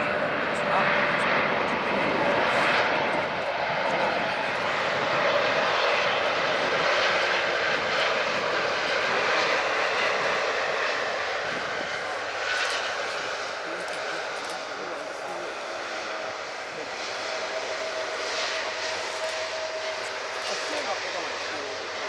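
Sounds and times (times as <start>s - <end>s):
airliner engines rushing: 0.0s - 22.0s.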